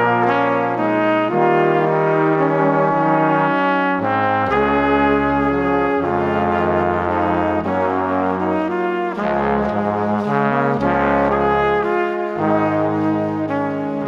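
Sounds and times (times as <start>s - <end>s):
brass instrumental music: 0.0s - 14.0s
low bass line: 4.0s - 14.0s.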